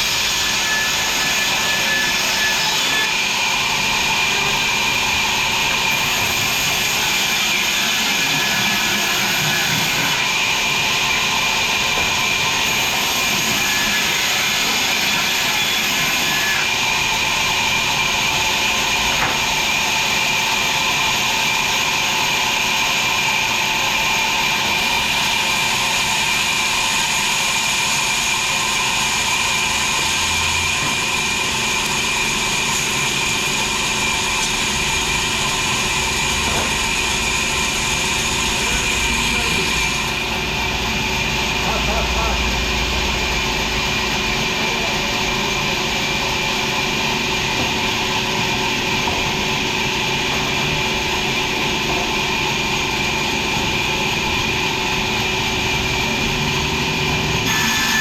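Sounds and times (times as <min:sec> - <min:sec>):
high machine whine: 0:00.0 - 0:58.0
sawmill machinery drone: 0:00.0 - 0:58.0.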